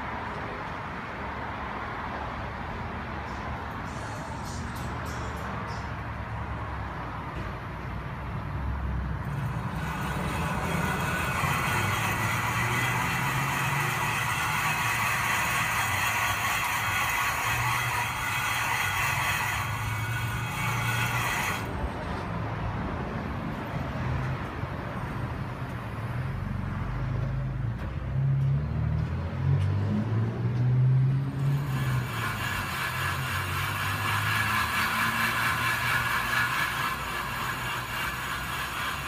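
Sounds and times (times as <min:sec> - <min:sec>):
road noise hiss: 0:00.0 - 0:39.0
wavering wheel bearing drone: 0:09.2 - 0:21.8, 0:31.3 - 0:39.0.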